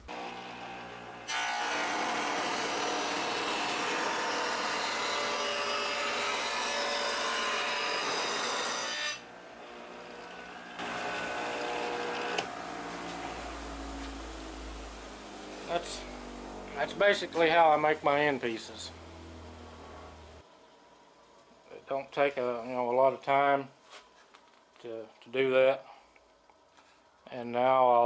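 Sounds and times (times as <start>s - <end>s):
power saw cutting wood: 0.0s - 20.4s.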